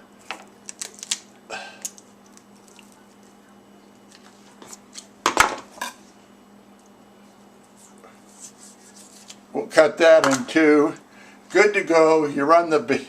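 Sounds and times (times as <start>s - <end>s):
bone snapping: 0.6s - 3.0s.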